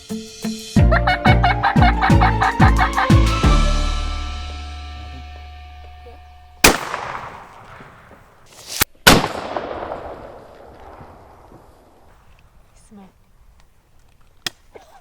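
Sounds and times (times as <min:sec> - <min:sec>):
held musical note: 0:00.8 - 0:05.5
shotgun blast with echo: 0:06.6 - 0:08.3, 0:09.0 - 0:10.4.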